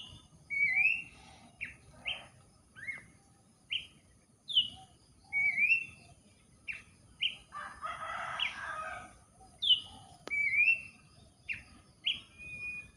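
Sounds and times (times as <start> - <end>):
bird calling whistled notes: 0.0 - 3.1, 4.5 - 6.1, 9.6 - 12.9.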